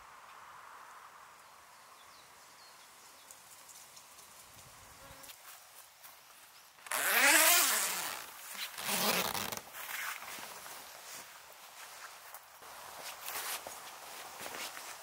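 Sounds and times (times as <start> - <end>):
zipper being pulled: 6.8 - 10.2.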